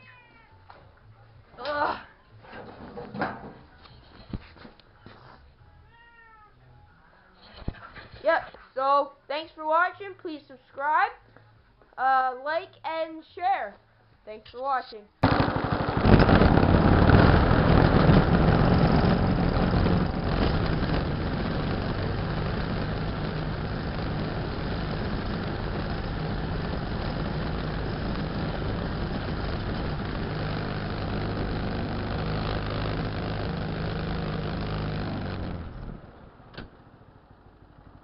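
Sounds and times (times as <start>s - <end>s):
riding lawn mower engine running: 15.2s - 38.0s.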